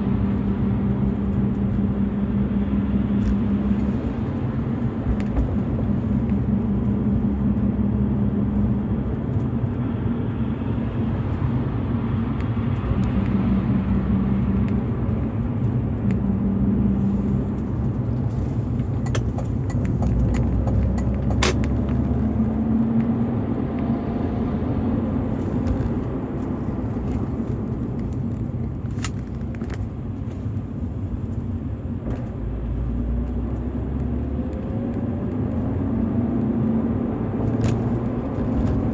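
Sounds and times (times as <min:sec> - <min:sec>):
car engine low rumble: 0:00.0 - 0:38.9.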